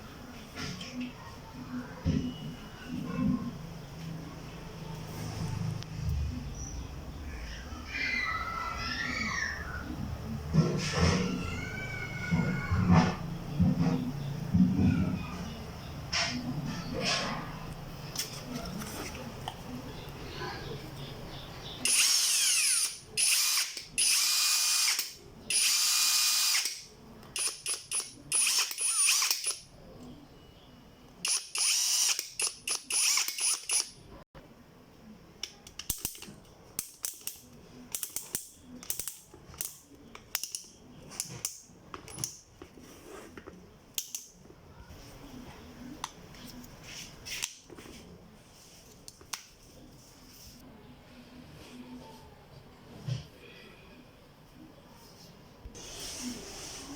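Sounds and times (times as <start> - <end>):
cordless drill running: 21.9 - 26.7, 31.3 - 33.8.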